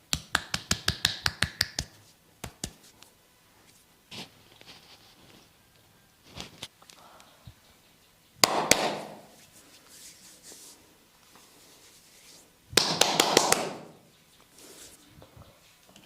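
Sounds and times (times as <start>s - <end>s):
hands slapping on body: 0.1s - 3.0s, 8.4s - 9.4s, 12.8s - 14.0s.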